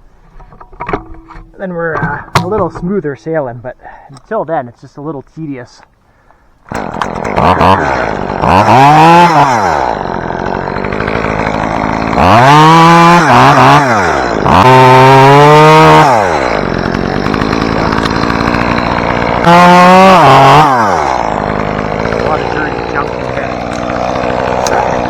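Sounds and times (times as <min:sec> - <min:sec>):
chainsaw cutting limbs: 0:06.6 - 0:25.0
chainsaw revving and idling: 0:06.7 - 0:25.0.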